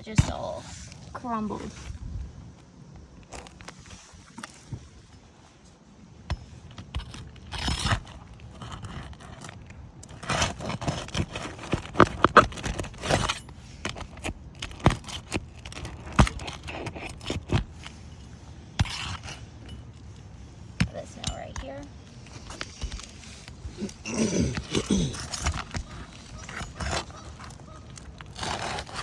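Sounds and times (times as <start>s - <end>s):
roofing tool scraping shingles: 6.4s - 29.0s.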